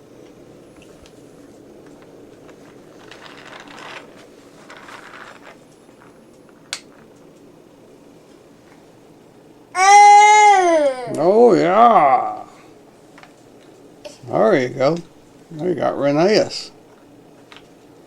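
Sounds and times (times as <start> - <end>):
low room hum: 0.0 - 18.0
toy trains clattering: 3.0 - 5.6.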